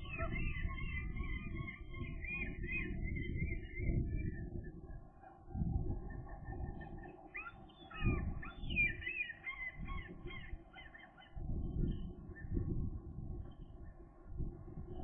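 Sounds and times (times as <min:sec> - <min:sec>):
wind buffeting microphone: 0:00.0 - 0:07.0, 0:11.4 - 0:15.0.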